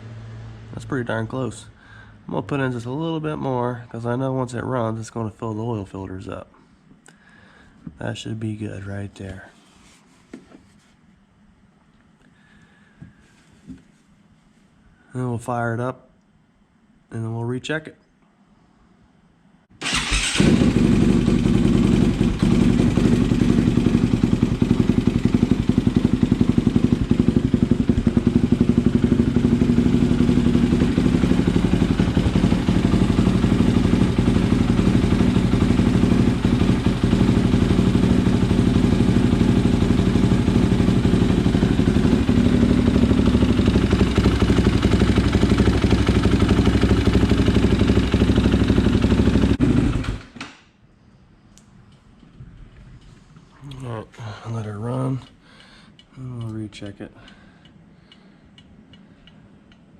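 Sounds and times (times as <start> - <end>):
motorcycle engine starting and idling: 19.8 - 50.6.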